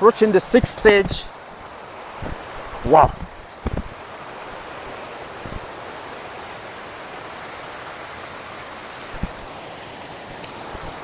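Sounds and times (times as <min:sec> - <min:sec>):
waterfall rushing: 0:00.0 - 0:11.0
short low thumps: 0:02.2 - 0:04.0, 0:09.2 - 0:09.5.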